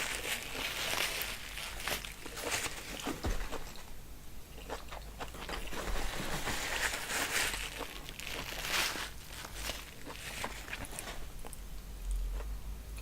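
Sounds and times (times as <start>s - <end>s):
crunchy bites: 0.0s - 3.8s, 4.5s - 12.5s
chewing and wet smacking: 4.5s - 5.8s.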